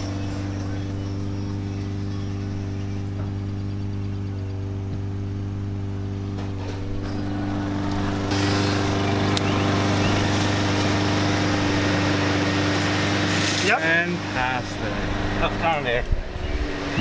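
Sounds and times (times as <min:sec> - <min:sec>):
radiator fans rushing air: 0:00.0 - 0:17.0
steady low hum: 0:00.0 - 0:17.0.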